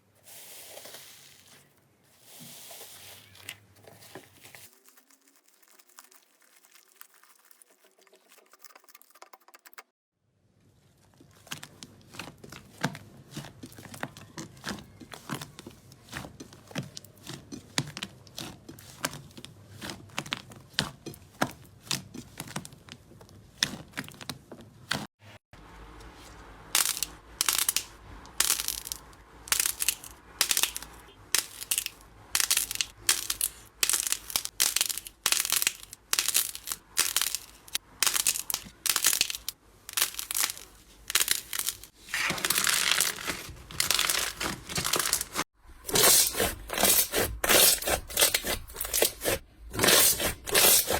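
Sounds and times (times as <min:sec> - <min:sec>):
slime crisp crunches: 0:02.3 - 0:08.0, 0:26.2 - 0:50.9.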